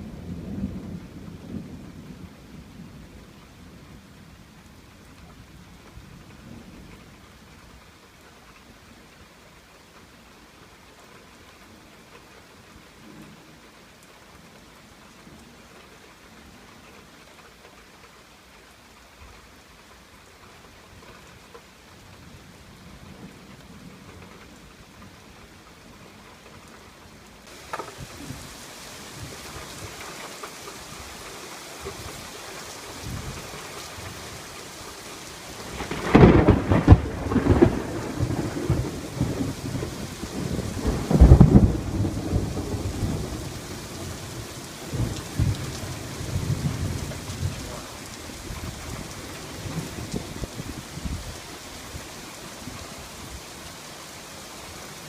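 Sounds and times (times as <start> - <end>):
steady rain: 0.0 - 55.0
distant thunder rumbles: 27.5 - 51.2
loud thunder crack: 35.6 - 43.4.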